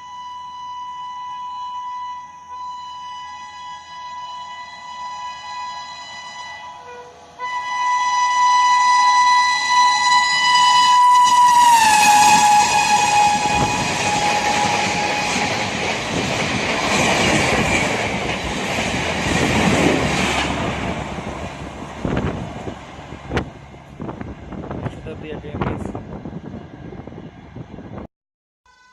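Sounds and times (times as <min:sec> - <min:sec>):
train horn blast: 0:00.0 - 0:15.8
train wheels rushing on rails: 0:06.0 - 0:28.0.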